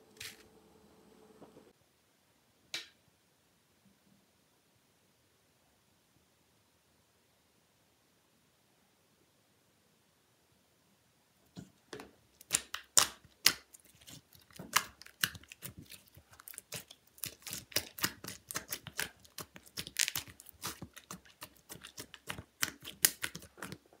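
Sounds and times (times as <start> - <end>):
slime crackling and popping: 12.4 - 23.8.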